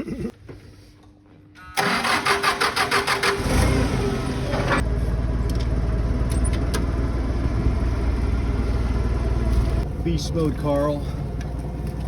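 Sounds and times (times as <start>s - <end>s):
engine starter cranking: 1.8s - 4.8s
vehicle engine running: 3.0s - 12.0s.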